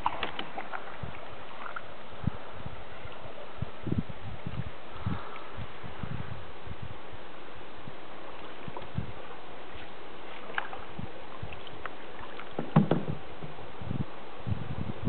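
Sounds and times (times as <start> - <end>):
paddle splashing water: 0.0 - 13.7
wind: 0.0 - 15.0
sharp knocks: 12.6 - 13.1.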